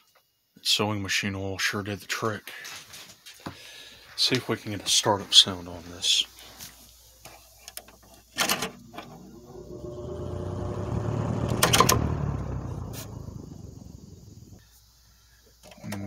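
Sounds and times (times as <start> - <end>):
box fan whirring: 8.5 - 14.6.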